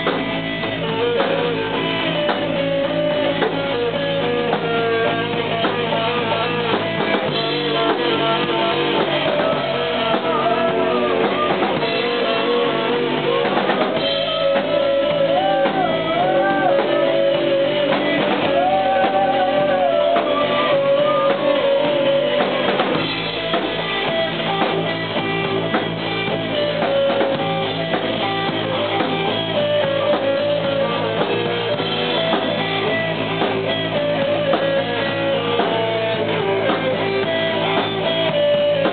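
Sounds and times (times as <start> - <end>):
music with guitar and drums: 0.0 - 38.9.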